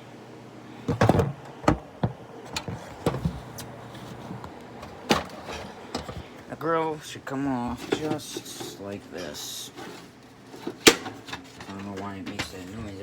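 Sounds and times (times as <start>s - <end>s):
plastic knocks and clunks: 0.9s - 6.4s.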